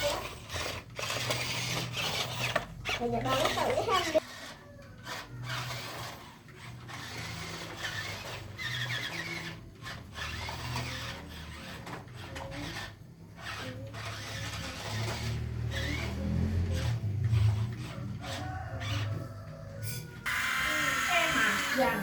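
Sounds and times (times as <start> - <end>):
small electric motors whirring: 0.0 - 22.0.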